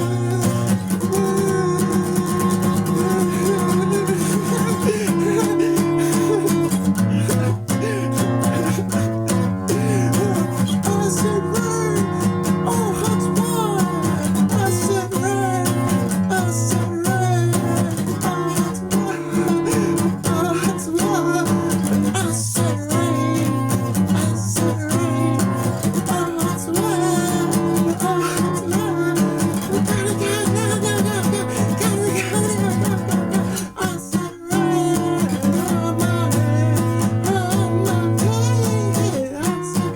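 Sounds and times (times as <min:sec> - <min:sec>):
punk rock guitar music: 0:00.0 - 0:39.9.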